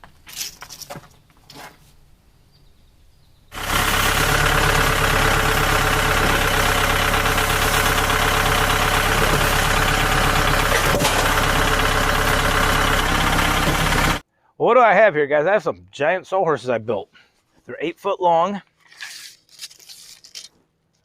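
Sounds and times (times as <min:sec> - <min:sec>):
tractor engine idling: 0:03.5 - 0:14.2.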